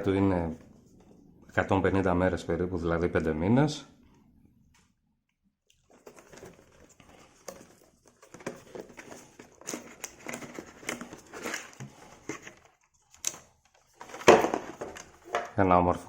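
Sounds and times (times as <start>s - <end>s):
plastic packaging crinkling: 5.8s - 15.6s.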